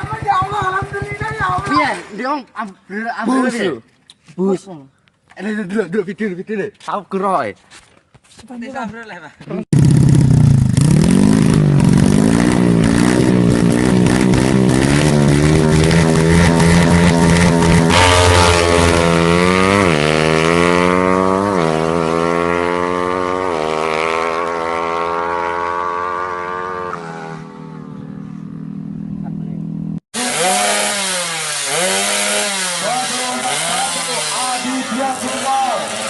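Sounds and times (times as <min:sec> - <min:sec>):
motorcycle engine accelerating: 0:00.0 - 0:02.0, 0:09.7 - 0:36.0.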